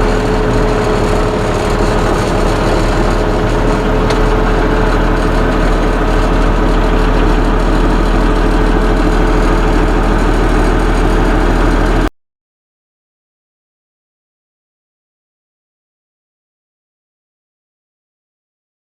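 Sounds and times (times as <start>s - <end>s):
tractor diesel engine running: 0.0s - 12.1s.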